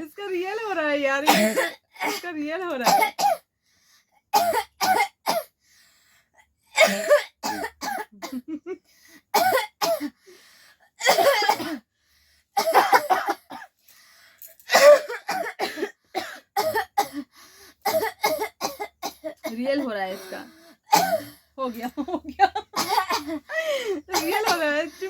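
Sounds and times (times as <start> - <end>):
woman coughing: 1.2 - 3.4, 4.4 - 5.5, 6.8 - 8.6, 9.4 - 10.2, 11.0 - 11.8, 12.6 - 13.7, 14.7 - 17.3, 17.9 - 21.4, 22.0 - 24.9
girl coughing: 1.2 - 3.5, 4.4 - 5.5, 6.8 - 8.5, 9.4 - 10.2, 11.0 - 11.8, 12.6 - 13.7, 14.7 - 19.6, 20.9 - 21.4, 22.6 - 24.7.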